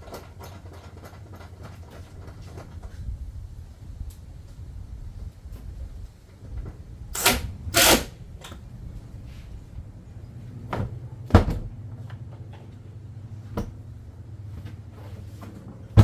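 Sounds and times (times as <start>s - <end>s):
knocks of parts: 7.2s - 8.6s.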